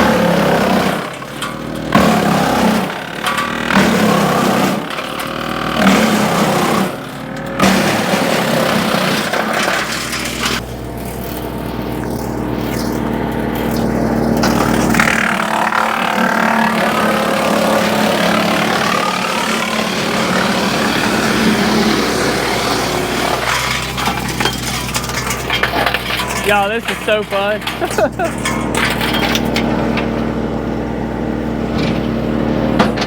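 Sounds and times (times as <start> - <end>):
tractor engine hum: 0.0 - 33.0
wood chipper chewing brush: 0.0 - 33.0.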